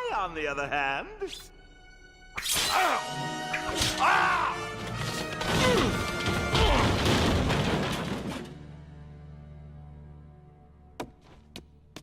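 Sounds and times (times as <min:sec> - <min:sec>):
music: 0:00.0 - 0:12.0
crashing and smashing effects: 0:03.7 - 0:08.6.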